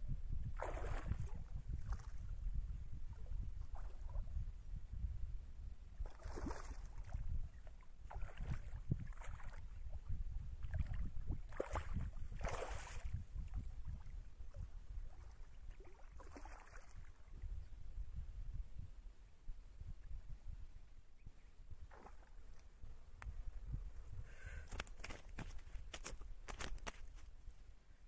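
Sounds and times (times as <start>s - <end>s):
water splashing and sloshing: 0.6s - 2.2s, 6.0s - 7.3s, 8.0s - 9.8s, 10.6s - 17.3s, 21.9s - 22.6s.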